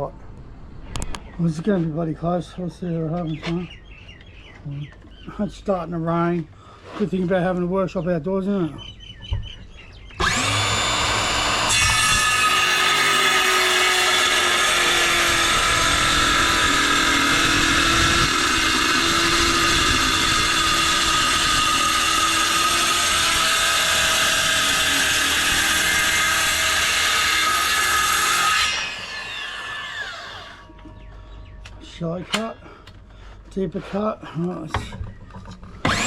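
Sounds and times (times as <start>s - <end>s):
power tool cutting wood: 10.1s - 30.7s, 35.8s - 36.0s.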